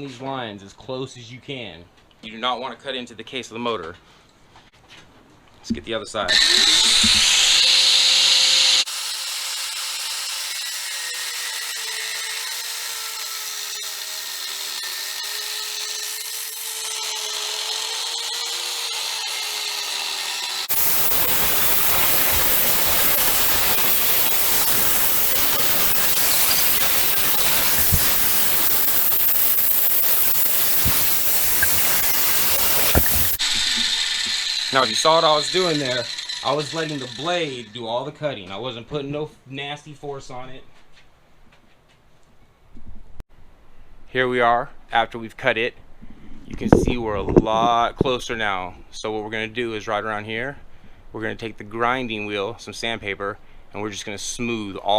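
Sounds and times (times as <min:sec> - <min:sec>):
power saw cutting metal: 0:06.3 - 0:38.2.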